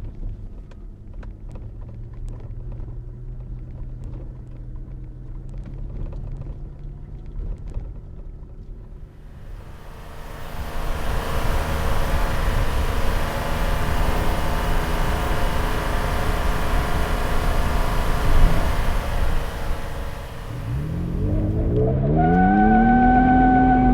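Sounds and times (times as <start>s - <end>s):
road and wind noise: 0.0s - 23.9s
truck engine running: 8.8s - 22.1s.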